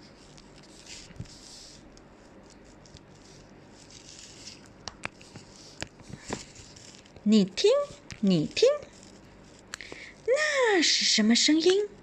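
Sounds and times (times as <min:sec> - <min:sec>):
faint clicks and taps: 0:04.8 - 0:06.5.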